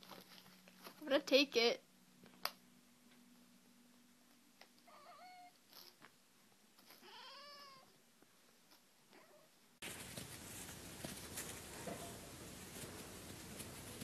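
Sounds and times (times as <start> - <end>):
cat meowing: 4.8 - 5.6, 7.0 - 8.0.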